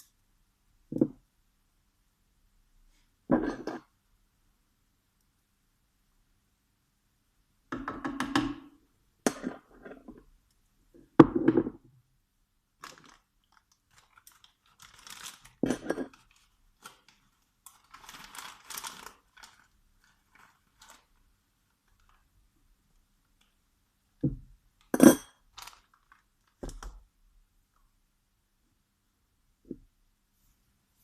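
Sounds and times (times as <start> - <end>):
kitchen knocks and thunks: 11.2 - 11.8.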